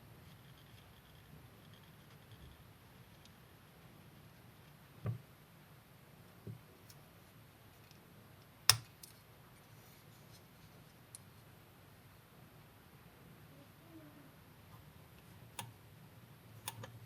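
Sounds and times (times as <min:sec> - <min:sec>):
faint steady hiss: 0:00.0 - 0:17.0.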